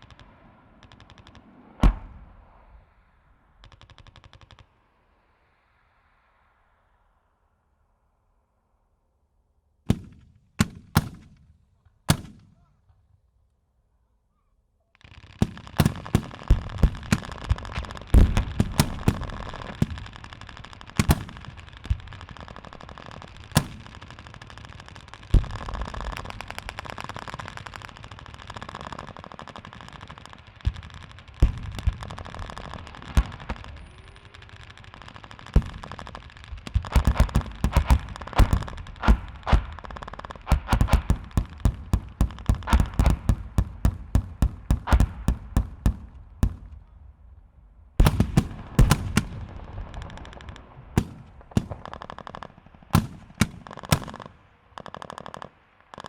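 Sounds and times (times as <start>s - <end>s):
single gunshots echoing: 1.4s - 2.8s, 48.0s - 52.1s.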